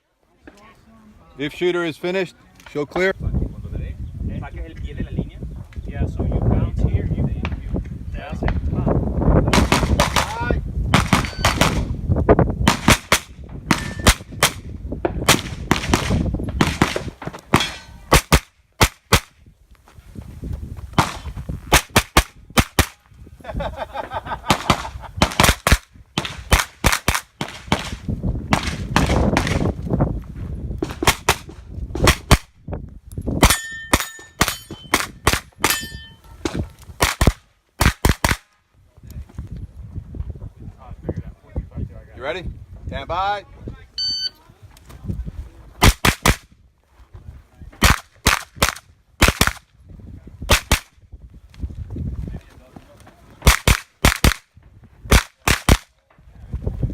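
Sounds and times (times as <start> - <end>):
rapid gunfire: 24.5 - 29.6, 53.4 - 54.4, 55.1 - 55.9
steel targets clanging: 33.4 - 35.0, 35.6 - 36.3.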